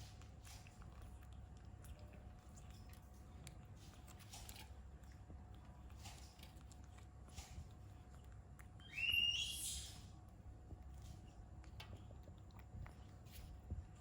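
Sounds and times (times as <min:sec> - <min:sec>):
monkey squealing: 0:08.8 - 0:09.9.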